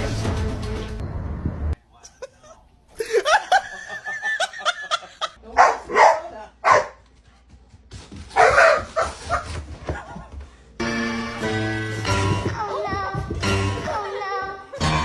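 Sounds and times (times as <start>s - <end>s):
dog barking: 5.5s - 7.0s, 8.3s - 9.6s.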